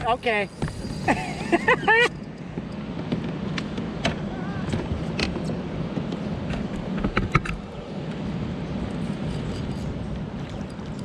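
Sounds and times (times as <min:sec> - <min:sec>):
steady low rumble: 0:00.0 - 0:11.0
clicks and knocks in a kayak: 0:02.4 - 0:08.2.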